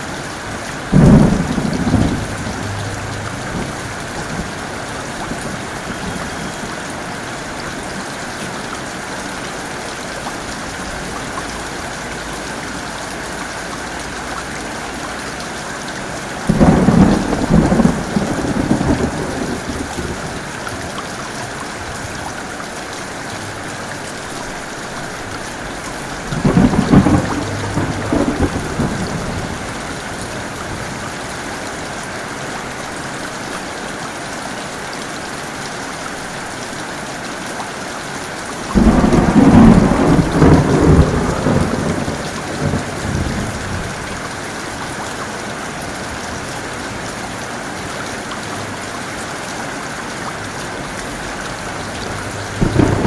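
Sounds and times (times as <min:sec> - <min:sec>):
heavy rain falling: 0:00.0 - 0:53.0
thunder clap rumbling: 0:00.6 - 0:06.6, 0:16.5 - 0:20.5, 0:25.4 - 0:31.2, 0:38.7 - 0:44.3, 0:51.6 - 0:53.0.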